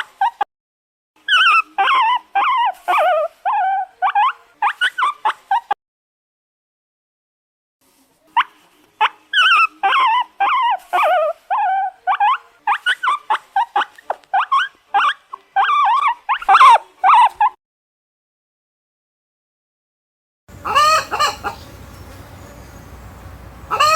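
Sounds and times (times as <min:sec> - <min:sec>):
animal yelping: 0:01.2 - 0:05.8, 0:08.4 - 0:17.6, 0:20.6 - 0:21.7, 0:23.7 - 0:23.9.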